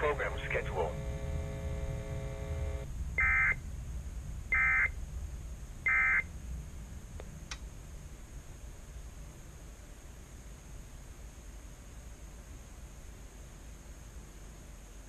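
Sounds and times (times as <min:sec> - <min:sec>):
buzzy digital data bursts: 0:00.0 - 0:03.6
low steady hum: 0:00.0 - 0:15.0
faint clicks: 0:07.2 - 0:07.7.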